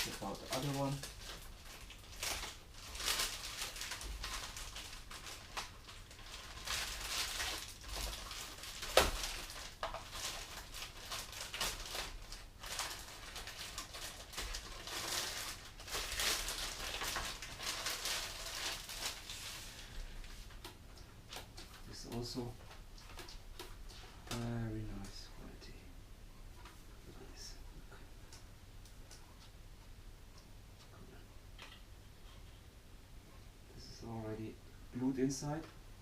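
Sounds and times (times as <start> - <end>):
wrapping rustling and crinkling: 0.0 - 25.3.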